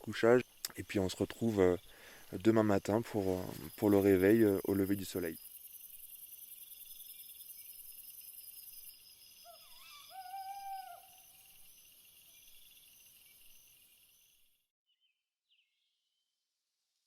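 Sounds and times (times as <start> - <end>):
high-pitched insect chirring: 0.2 - 14.5
owl-like hoots: 9.5 - 11.4.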